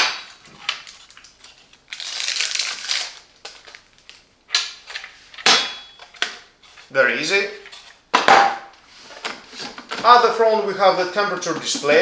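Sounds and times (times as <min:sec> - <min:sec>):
plastic rustling: 0:00.0 - 0:05.4, 0:08.7 - 0:12.0.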